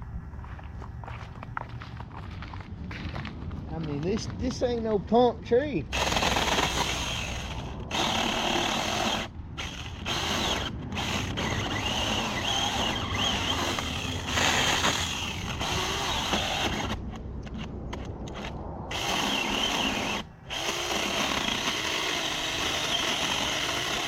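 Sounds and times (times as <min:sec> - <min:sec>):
electric chainsaw cutting wood: 0:05.9 - 0:17.7, 0:18.3 - 0:24.0.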